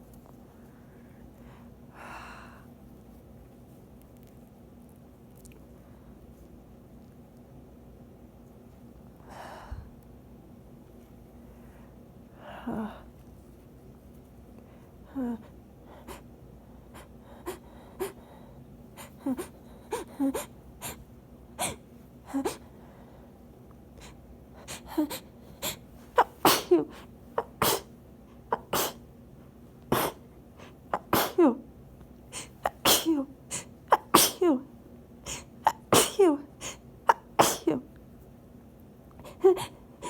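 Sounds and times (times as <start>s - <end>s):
woman sneezing: 26.2s - 27.9s, 28.5s - 29.0s, 29.9s - 30.2s, 30.9s - 31.6s, 32.4s - 34.7s, 35.3s - 37.8s.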